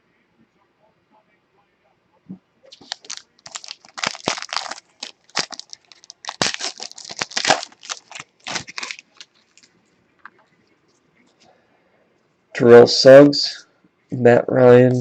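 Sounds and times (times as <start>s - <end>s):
card pack wrapper crinkling: 2.7s - 9.7s.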